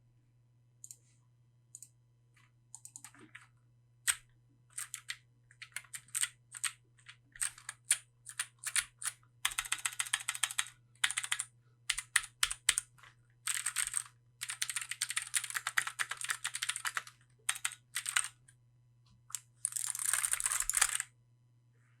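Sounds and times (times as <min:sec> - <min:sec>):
mechanical keyboard typing: 0:02.8 - 0:03.4, 0:04.1 - 0:18.4, 0:19.3 - 0:21.1.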